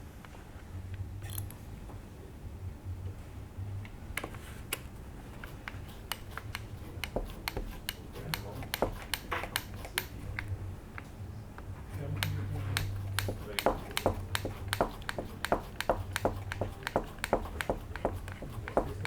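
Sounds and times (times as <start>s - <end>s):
screwdriver clicks on plastic parts: 5.6s - 11.1s, 12.0s - 19.0s.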